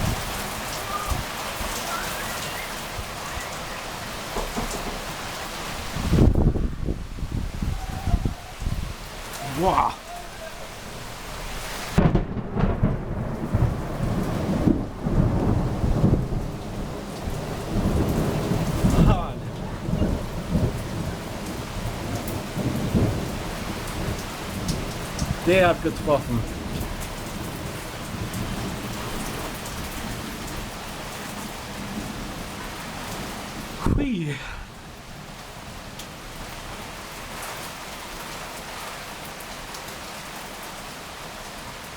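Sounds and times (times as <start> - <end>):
steady rain: 0.0 - 41.9
thunder cracks and rumbles: 3.3 - 5.3, 11.9 - 30.7.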